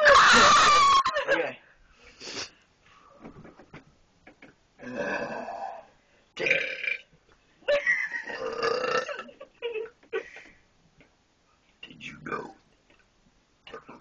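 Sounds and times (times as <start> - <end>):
person burping: 4.8 - 7.1, 8.2 - 9.3.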